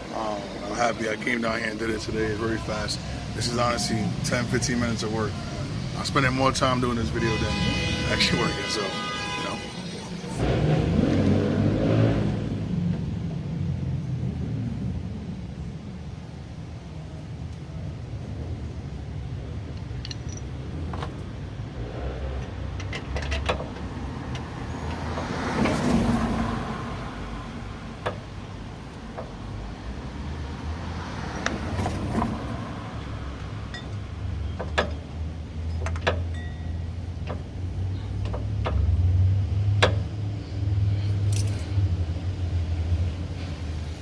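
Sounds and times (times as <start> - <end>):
metal tools clinking: 19.9 - 20.6, 41.3 - 41.7.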